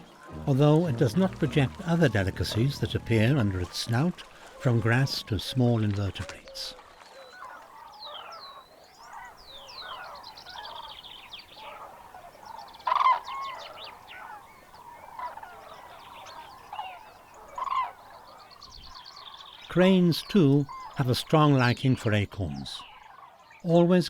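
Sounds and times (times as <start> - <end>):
bird trills: 7.1 - 21.1
lower arched bird calls: 7.1 - 21.8.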